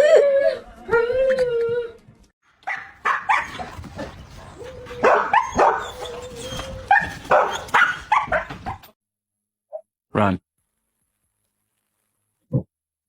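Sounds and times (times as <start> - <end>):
dog barking: 2.6 - 8.8.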